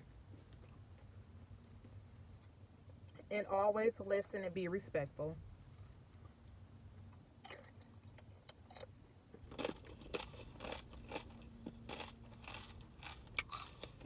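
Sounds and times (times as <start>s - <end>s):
chewing crunchy chips: 7.4s - 14.0s.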